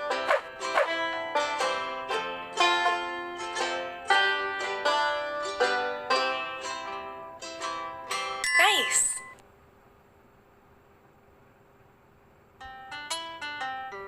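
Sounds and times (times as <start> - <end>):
plucked string tune: 0.0 - 9.1, 12.6 - 14.0.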